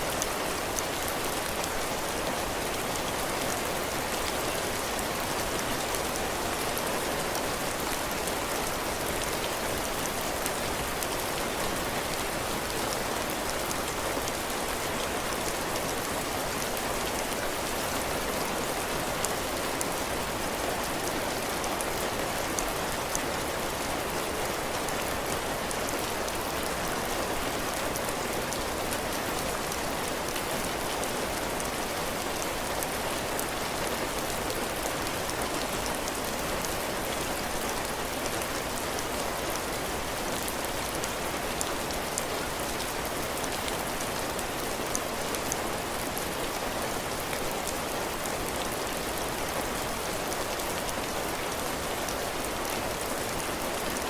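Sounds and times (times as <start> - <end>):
heavy rain on a roof: 0.0 - 54.0.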